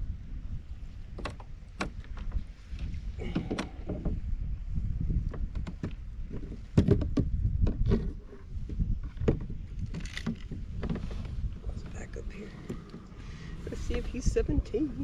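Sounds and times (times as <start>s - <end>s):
knocks of gear in a kayak: 1.1s - 4.3s, 5.1s - 11.6s
steady low rumble: 8.9s - 15.0s.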